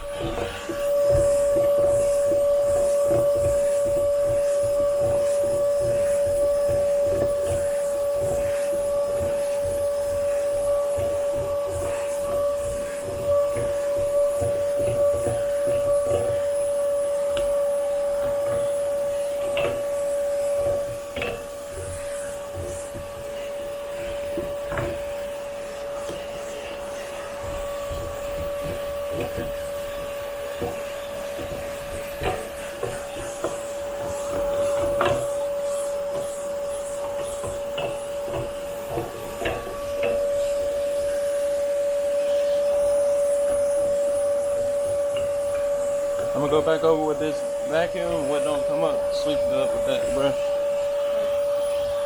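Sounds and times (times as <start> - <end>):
vacuum cleaner whining: 0.0 - 52.0
nozzle clicking and knocking: 37.1 - 40.2.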